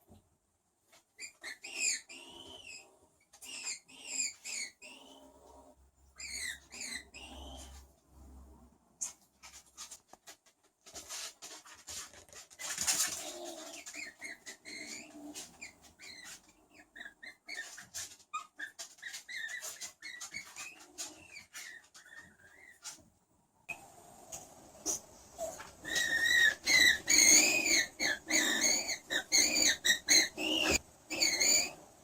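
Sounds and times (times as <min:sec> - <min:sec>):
skunk chirps and squeaks: 0:01.2 - 0:07.9, 0:12.6 - 0:23.0, 0:25.4 - 0:31.8.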